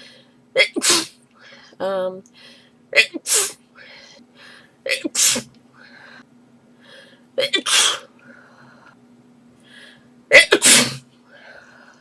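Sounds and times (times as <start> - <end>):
girl sneezing: 0.6 - 1.2, 3.0 - 3.6, 5.0 - 5.5, 7.4 - 8.1, 10.3 - 11.0.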